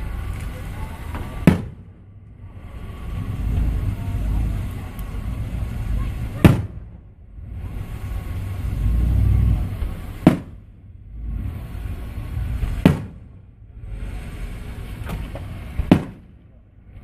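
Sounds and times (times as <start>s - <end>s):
fireworks bangs: 0.0s - 7.1s, 9.6s - 10.8s, 11.9s - 13.6s, 14.8s - 16.6s
low rumble: 0.0s - 17.0s.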